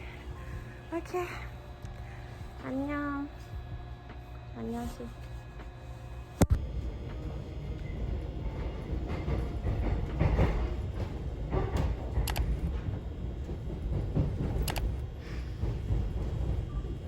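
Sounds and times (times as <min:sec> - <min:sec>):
train rumbling: 0:00.0 - 0:17.0
sharp clicks: 0:14.6 - 0:14.8.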